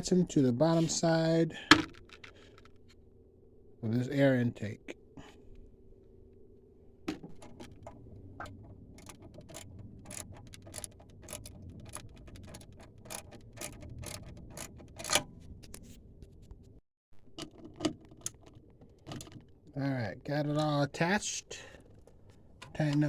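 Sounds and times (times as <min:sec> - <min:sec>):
hand tools clicking on metal hardware: 0:07.4 - 0:15.4.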